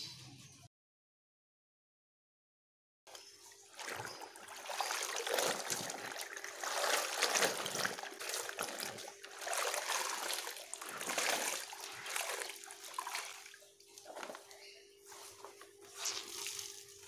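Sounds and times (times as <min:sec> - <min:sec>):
water trickling and splashing: 0:03.1 - 0:14.6, 0:15.8 - 0:17.0.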